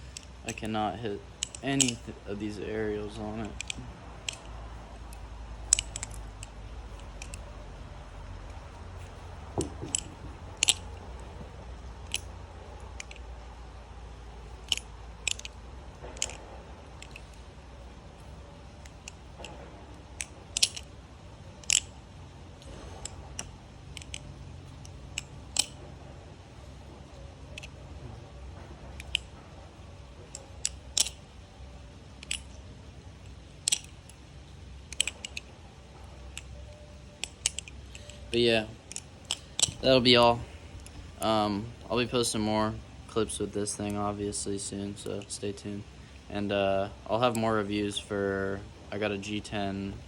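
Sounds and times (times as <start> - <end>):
butterfly knife metallic clicks: 0.0 - 7.7, 8.4 - 13.4, 14.5 - 17.5, 18.2 - 26.0, 27.1 - 27.8, 28.9 - 29.4, 30.2 - 31.3, 33.2 - 42.4
low steady hum: 0.0 - 50.0.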